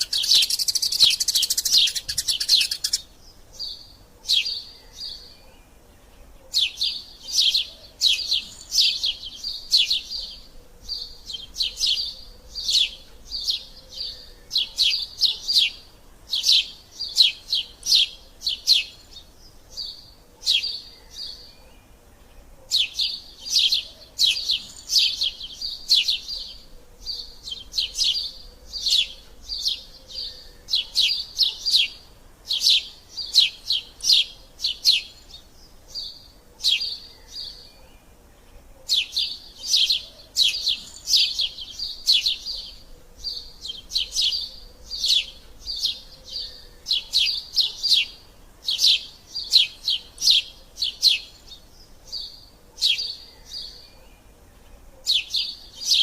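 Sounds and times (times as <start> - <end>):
sparrow chattering: 0.0 - 5.3.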